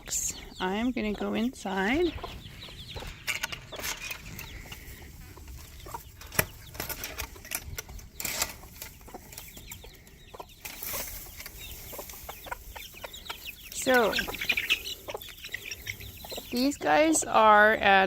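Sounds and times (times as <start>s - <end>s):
chicks peeping and clucking: 0.0s - 18.0s
rustling: 10.6s - 12.9s.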